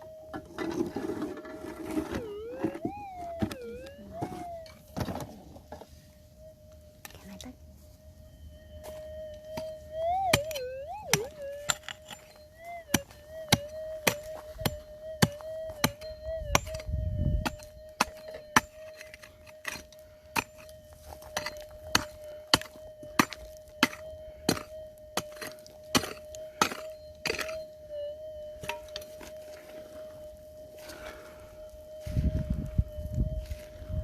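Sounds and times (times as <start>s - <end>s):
metal detector hum: 0.0s - 34.0s
pick striking hard ground: 9.5s - 20.6s, 21.3s - 27.6s.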